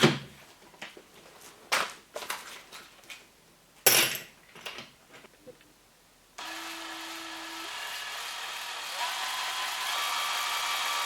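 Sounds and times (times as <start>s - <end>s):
drill motor humming: 6.4s - 11.0s.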